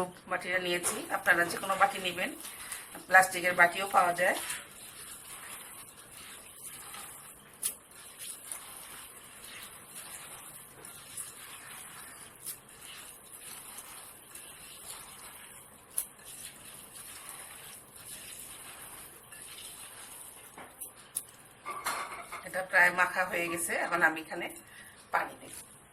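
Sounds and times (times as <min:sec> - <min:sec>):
hands squishing wet grains: 0:01.0 - 0:21.5.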